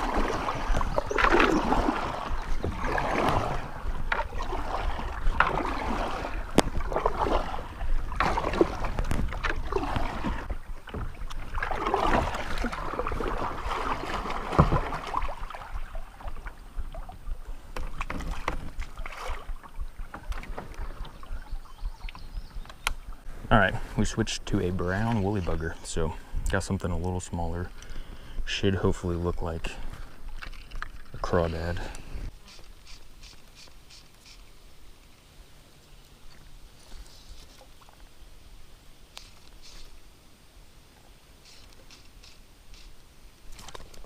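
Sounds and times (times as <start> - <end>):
paddle splashing in water: 0.0 - 24.0, 29.2 - 34.5.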